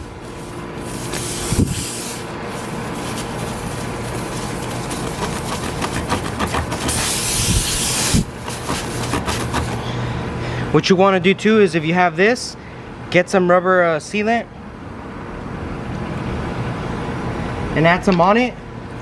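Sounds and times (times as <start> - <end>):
reamer rubbing in tyre: 0.0 - 9.9
air hissing from tyre: 0.0 - 10.0.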